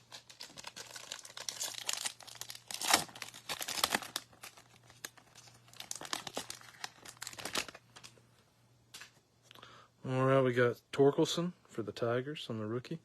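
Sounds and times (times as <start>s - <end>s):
foil wrapper tearing and crinkling: 0.0s - 8.1s.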